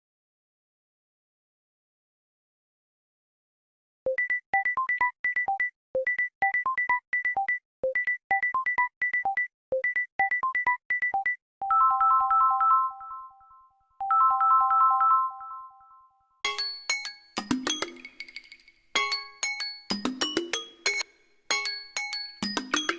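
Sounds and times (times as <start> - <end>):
synth ringtone beeps: 4.1 - 16.3
chiming ringtone: 4.1 - 22.9.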